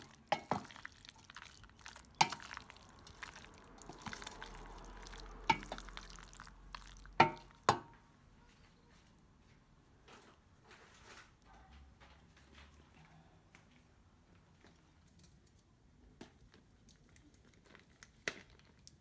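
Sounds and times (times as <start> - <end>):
spoon stirring wet macaroni: 0.0 - 7.9.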